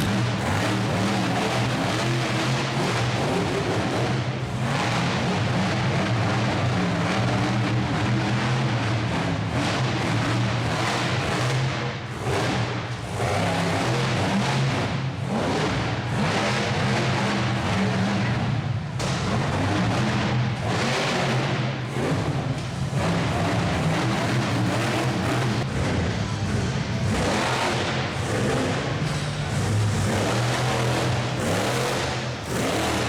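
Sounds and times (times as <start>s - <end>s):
vehicle engine humming: 0.0s - 2.6s, 21.6s - 33.0s.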